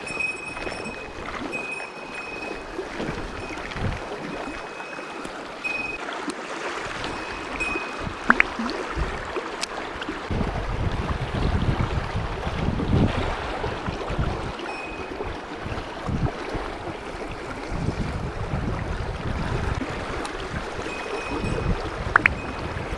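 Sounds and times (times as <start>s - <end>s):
stream water rushing: 0.0s - 10.4s, 12.4s - 18.0s, 19.7s - 22.9s
wind buffeting microphone: 2.6s - 4.6s, 6.8s - 22.9s.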